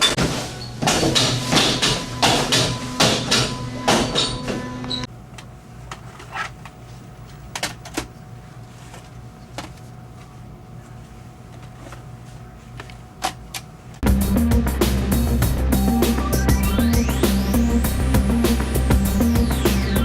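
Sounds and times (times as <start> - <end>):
music: 14.0 - 20.0.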